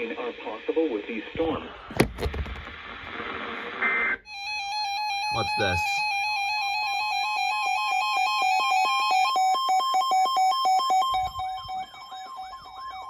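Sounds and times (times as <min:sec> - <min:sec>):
electronic alert tones: 0:04.3 - 0:13.0.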